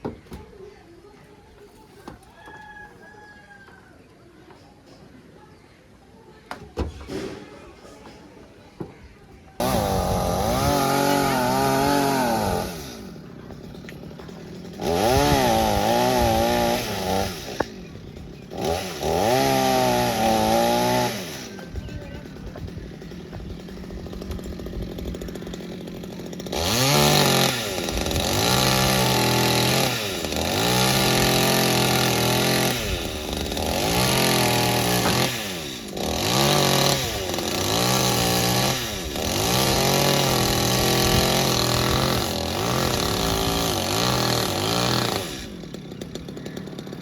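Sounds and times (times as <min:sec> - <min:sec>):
chainsaw cutting wood: 0:09.6 - 0:47.0.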